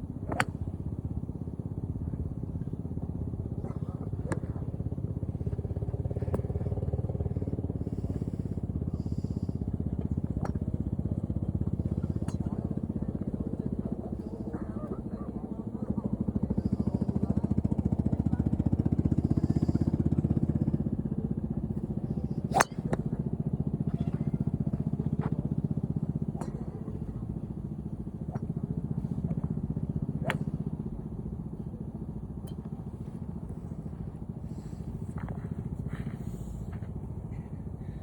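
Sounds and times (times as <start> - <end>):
low engine rumble: 0.0 - 38.0
golf club striking balls: 0.2 - 0.8, 21.6 - 31.2.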